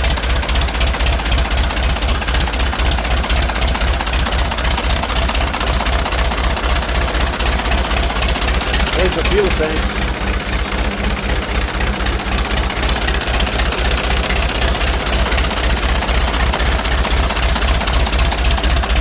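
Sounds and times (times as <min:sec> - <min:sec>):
diesel tractor engine idling: 0:00.0 - 0:19.0.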